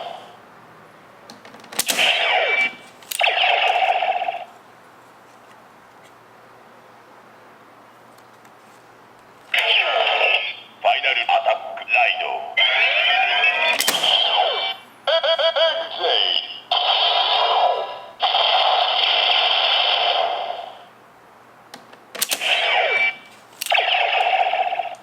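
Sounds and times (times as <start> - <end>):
toy belt electronic voice: 9.6 - 20.8, 22.5 - 25.0.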